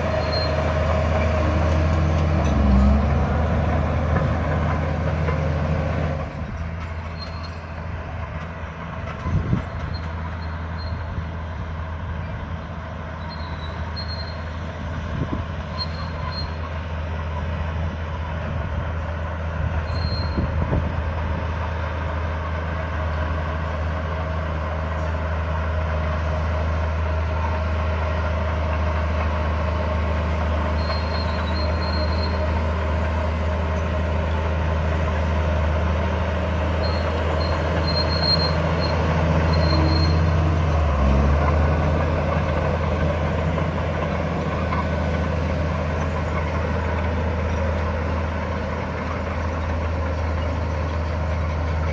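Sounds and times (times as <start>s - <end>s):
diesel engine running: 0.0s - 51.9s
short high squeaks: 0.1s - 1.4s, 6.9s - 7.7s, 9.8s - 11.2s, 13.2s - 14.6s, 15.7s - 16.8s, 19.8s - 20.6s, 30.7s - 32.7s, 36.8s - 40.6s.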